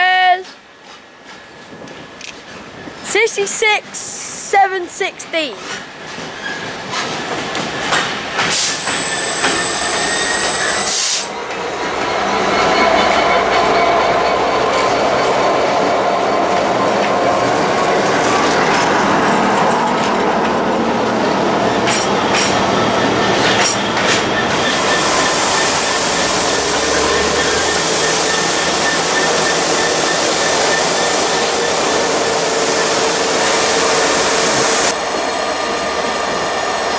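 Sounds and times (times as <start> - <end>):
train wheels clattering: 5.6 - 34.0
high-pitched squeal: 8.6 - 11.4.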